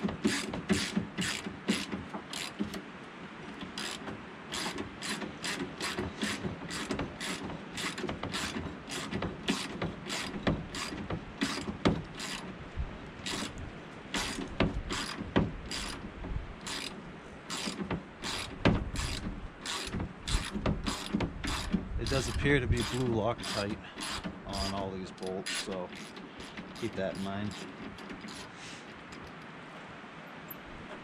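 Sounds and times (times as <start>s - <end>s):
hand ratchet clicking: 3.7s - 12.4s, 14.2s - 16.0s, 16.6s - 28.5s.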